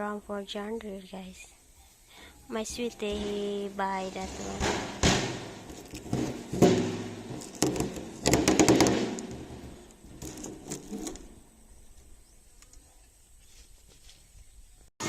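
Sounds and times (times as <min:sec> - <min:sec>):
objects knocking and clattering: 0:03.0 - 0:11.3.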